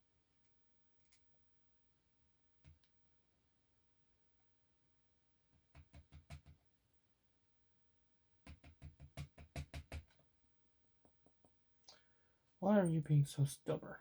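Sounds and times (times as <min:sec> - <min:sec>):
lock knocking on hard surface: 0:05.8 - 0:06.5, 0:08.5 - 0:10.2.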